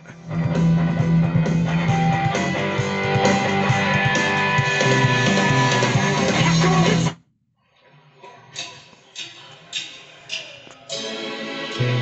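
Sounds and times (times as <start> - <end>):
rock music through car speaker: 0.1 - 7.2.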